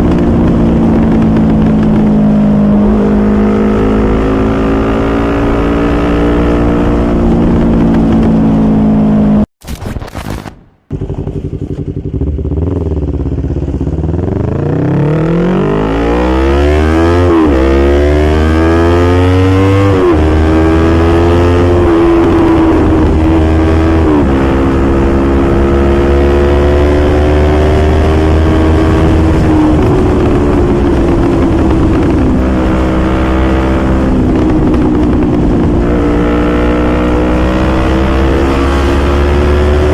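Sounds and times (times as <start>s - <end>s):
motorcycle engine shifting gears: 0.0s - 9.5s, 10.9s - 39.9s.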